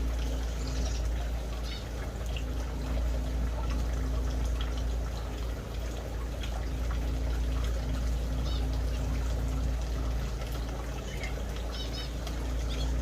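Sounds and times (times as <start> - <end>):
trickling water: 0.0 - 13.0
small birds chirping: 0.2 - 2.0, 8.2 - 9.2, 10.4 - 13.0.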